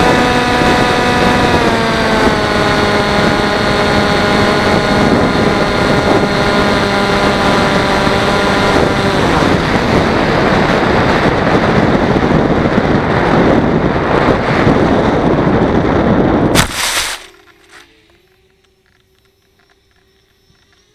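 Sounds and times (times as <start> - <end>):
wind rushing on microphone: 0.0 - 18.0
electric motor and propeller whine: 0.0 - 20.9
sudden jolt: 16.6 - 17.8.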